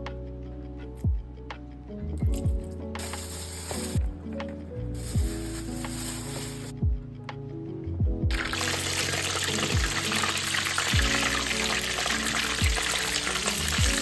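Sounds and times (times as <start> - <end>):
background music with deep bass: 0.0 - 14.0
steady watery hiss: 3.0 - 6.8, 8.3 - 14.0.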